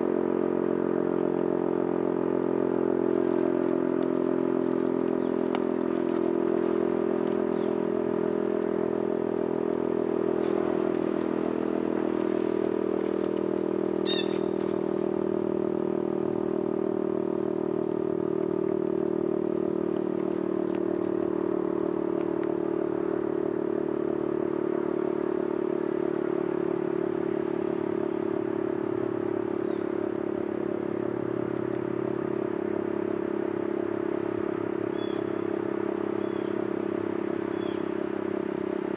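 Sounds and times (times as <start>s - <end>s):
rotating siren two-note chord: 6.6s - 15.2s.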